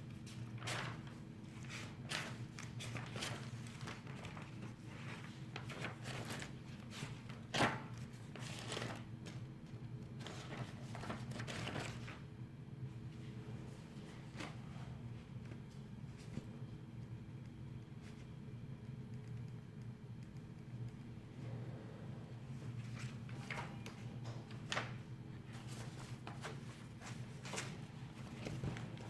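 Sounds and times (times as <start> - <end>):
low electrical hum: 0.0 - 29.0
paper rustling: 0.3 - 9.5, 10.1 - 12.2, 22.8 - 29.0.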